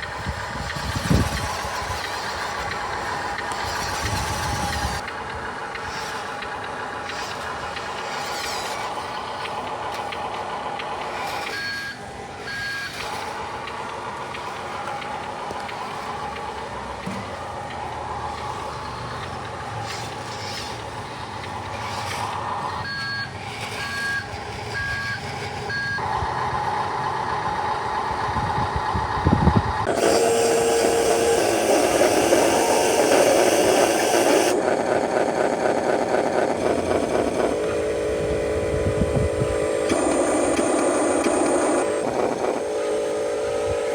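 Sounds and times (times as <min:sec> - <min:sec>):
loud noisy mechanical sound: 0:00.0 - 0:43.9
remote-control truck running: 0:00.0 - 0:43.9.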